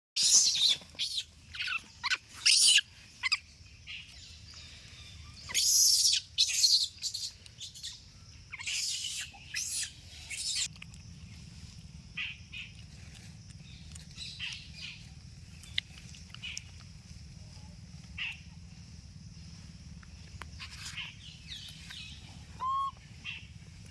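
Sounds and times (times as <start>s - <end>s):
monkey squeaking and shrieking: 0.2s - 3.4s, 5.5s - 10.7s, 22.6s - 22.9s.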